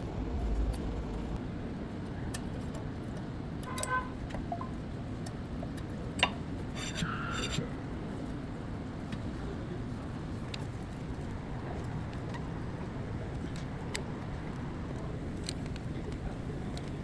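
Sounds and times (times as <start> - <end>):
car rumbling: 0.0 - 1.4.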